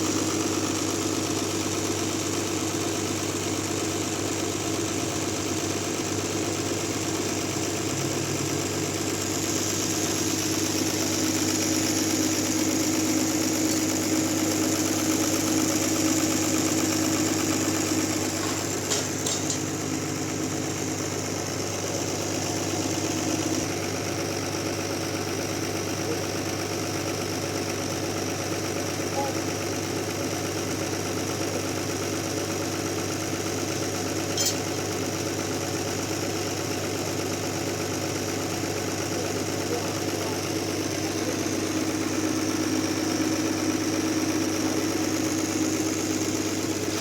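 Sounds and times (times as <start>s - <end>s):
sawmill machinery hum: 0.0s - 47.0s.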